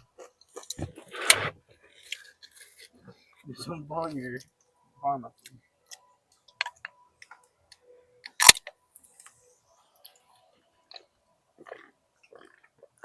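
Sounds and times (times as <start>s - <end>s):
chewing crispy food: 0.0s - 1.1s, 10.9s - 13.0s.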